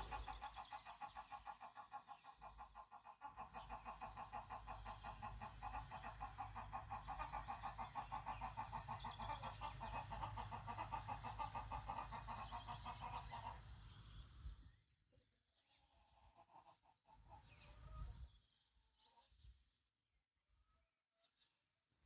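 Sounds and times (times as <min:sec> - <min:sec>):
birds calling in pulsed notes: 0:00.0 - 0:01.8.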